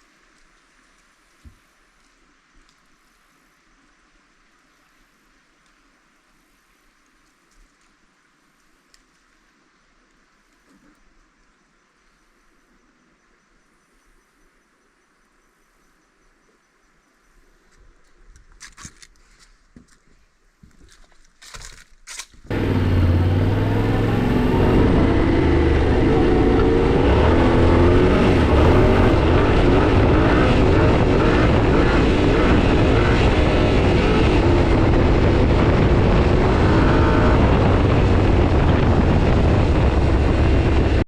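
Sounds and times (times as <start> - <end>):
motorcycle engine running: 22.5 - 41.0
rush of noise: 22.5 - 41.0.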